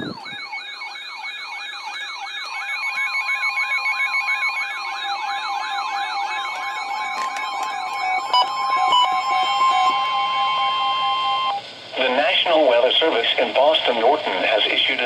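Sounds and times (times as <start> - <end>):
electronic beeping: 0.0 - 11.6
warbling siren alarm: 0.0 - 11.6.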